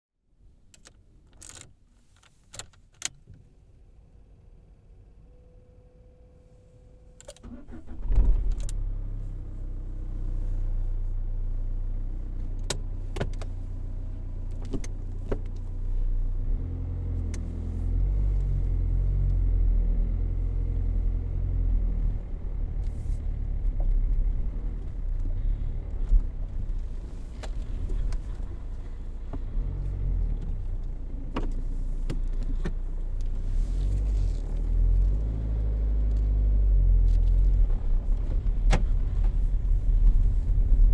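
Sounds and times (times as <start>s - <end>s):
car engine starting and running: 4.2s - 40.9s.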